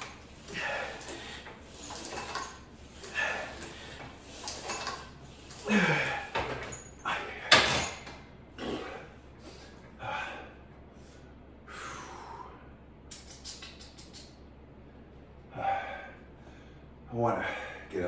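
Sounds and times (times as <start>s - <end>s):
man breathing hard: 5.6s - 6.4s, 8.6s - 12.8s, 15.5s - 17.9s.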